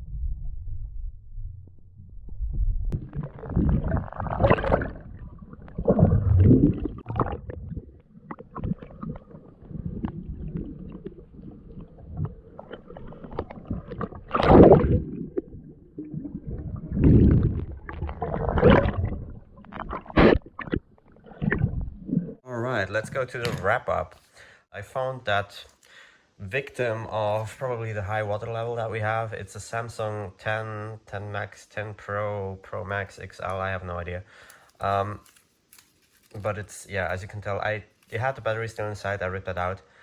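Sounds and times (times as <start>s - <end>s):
underwater river gurgling: 2.9s - 22.4s.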